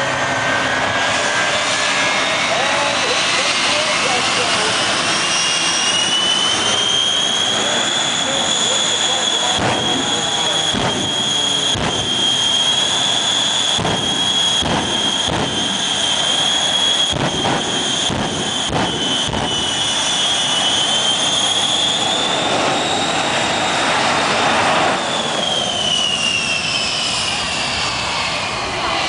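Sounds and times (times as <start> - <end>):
jet engine whine: 0.0 - 29.0
sharp bangs: 9.2 - 22.8.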